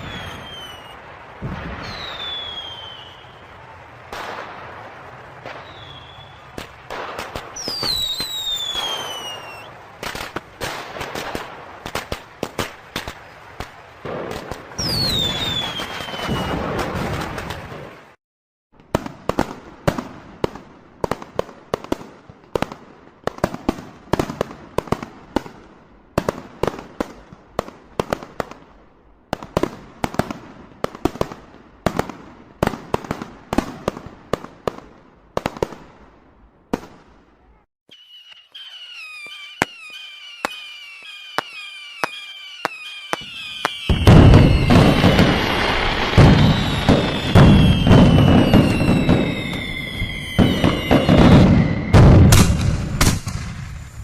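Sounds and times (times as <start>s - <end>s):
falling firework whistles: 0.0s - 18.0s, 37.6s - 54.0s
firecracker bangs: 0.0s - 18.0s, 38.3s - 54.0s
fireworks barrage: 0.0s - 18.2s, 18.8s - 54.0s.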